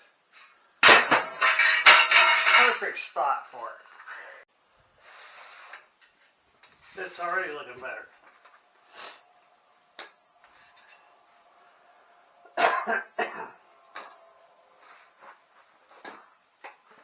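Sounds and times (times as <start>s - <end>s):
person coughing: 12.6s - 13.6s.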